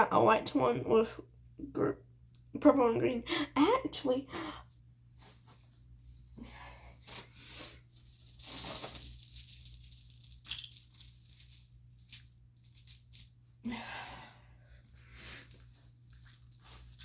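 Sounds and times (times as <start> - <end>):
plastic toys rustling and rattling: 7.9 - 13.4, 14.8 - 17.0.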